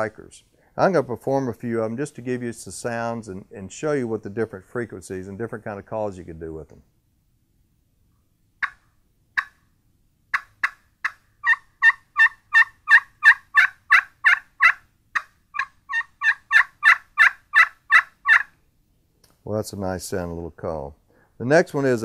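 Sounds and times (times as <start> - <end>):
turkey pot call yelps: 8.6 - 9.7, 10.3 - 18.5.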